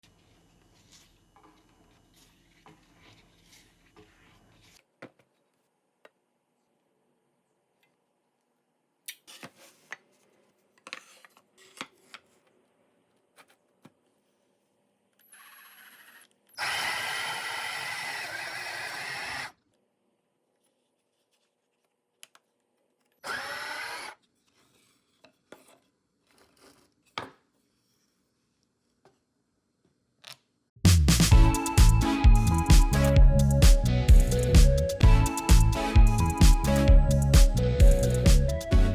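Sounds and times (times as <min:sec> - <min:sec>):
drill press motor drilling: 0:15.3 - 0:19.5, 0:23.2 - 0:24.2.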